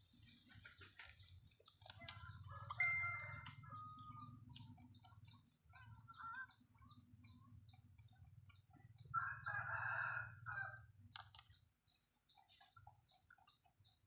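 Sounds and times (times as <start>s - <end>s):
chicken clucking: 0.2s - 10.1s
faint steady clicking: 1.0s - 9.5s
rooster crowing: 9.2s - 10.9s.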